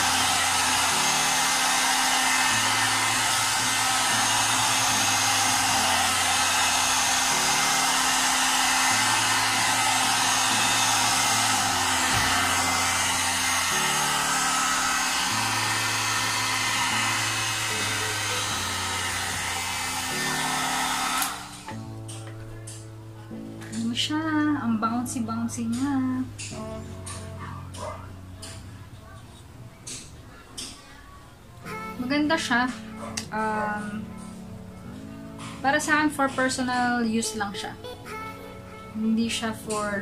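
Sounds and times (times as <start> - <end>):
hot air brush blowing: 0.0 - 21.8.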